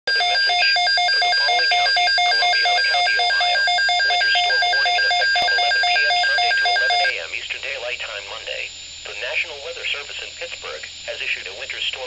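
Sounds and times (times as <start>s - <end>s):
rapid electronic alert beeps: 0.1s - 7.1s.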